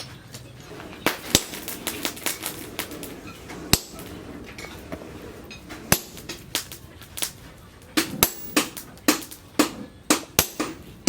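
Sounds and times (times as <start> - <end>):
hammer striking metal: 3.7 - 6.8, 8.0 - 11.0.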